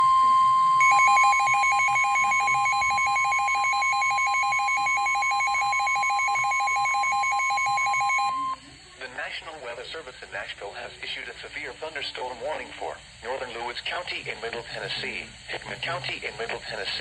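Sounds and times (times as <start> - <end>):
fast electronic alert beeping: 0.0 - 8.6
steady high alarm tone: 0.0 - 8.6.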